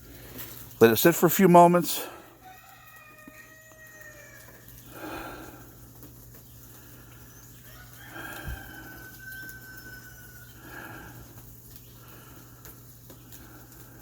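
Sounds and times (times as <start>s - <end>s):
faint rooster crowing: 2.0s - 5.6s, 7.2s - 11.3s.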